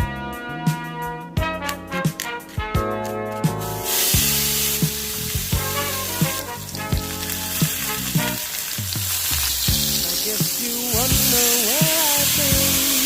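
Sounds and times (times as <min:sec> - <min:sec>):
background music with steady beat: 0:00.0 - 0:13.0
food sizzling in a hot pan: 0:03.6 - 0:13.0.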